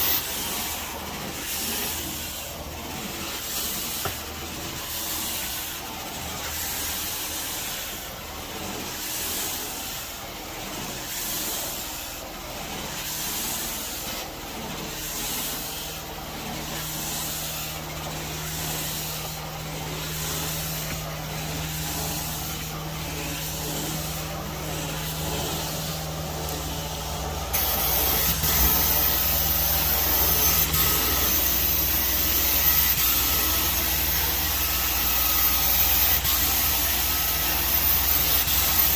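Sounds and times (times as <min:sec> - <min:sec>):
carpet cleaning wand hissing: 0:12.7 - 0:38.9.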